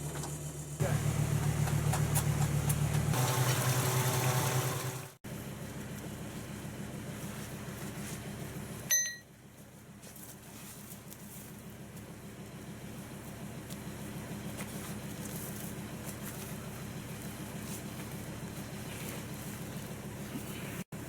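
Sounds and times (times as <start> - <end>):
vehicle engine idling: 0.0 - 21.0.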